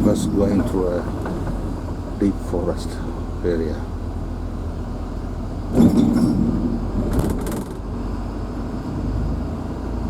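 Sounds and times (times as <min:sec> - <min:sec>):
vehicle engine running: 0:00.0 - 0:10.0
rattling bursts: 0:05.7 - 0:07.9.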